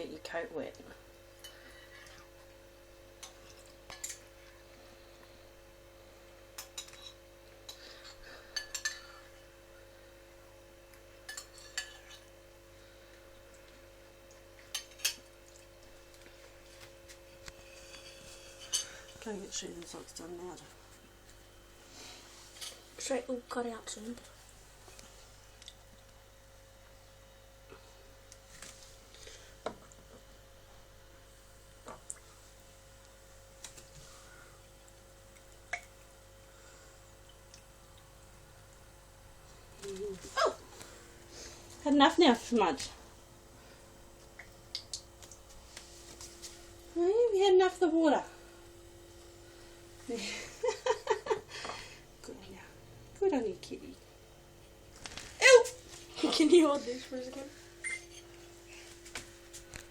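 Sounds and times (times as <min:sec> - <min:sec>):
faint steady hum: 0:00.0 - 0:59.9
water dripping from a tap: 0:37.2 - 0:38.8, 0:44.4 - 0:45.5.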